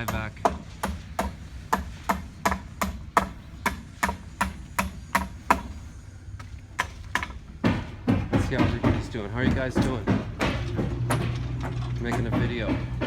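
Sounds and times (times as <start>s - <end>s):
rapid hammer strikes: 0.0s - 5.8s, 6.8s - 13.0s.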